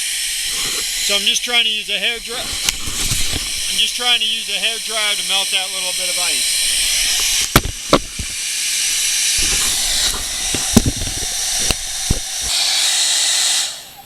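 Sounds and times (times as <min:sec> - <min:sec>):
hair dryer blowing: 0:00.0 - 0:14.0
sharp knocks and clicks: 0:07.2 - 0:08.4, 0:09.4 - 0:12.5.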